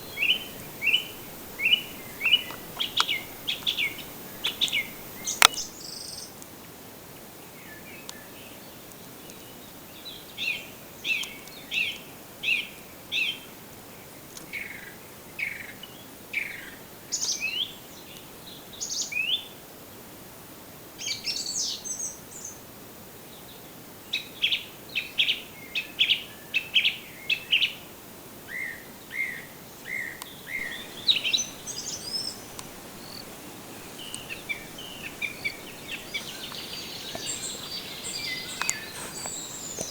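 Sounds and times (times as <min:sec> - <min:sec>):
songbirds chirping and whistling: 0:00.0 - 0:06.3, 0:28.5 - 0:39.9.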